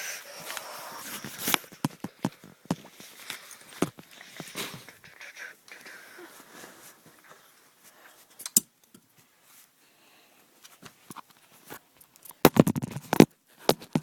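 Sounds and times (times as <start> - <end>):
objects being handled: 0.3 - 5.1
sharp clicks and knocks: 12.2 - 14.0.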